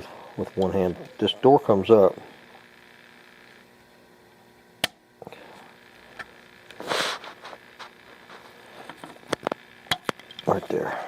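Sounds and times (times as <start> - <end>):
scraping rustle: 6.8 - 9.1.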